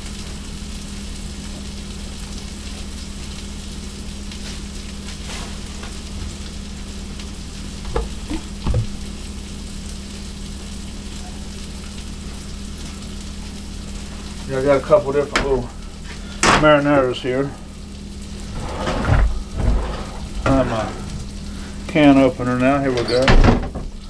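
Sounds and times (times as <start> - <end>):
patties sizzling in a skillet: 0.0 - 7.3
short knocks: 7.9 - 9.1.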